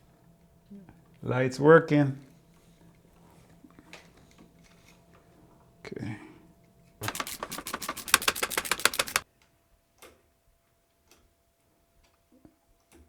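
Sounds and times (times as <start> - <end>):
sharp mechanical clicks: 7.0 - 9.2.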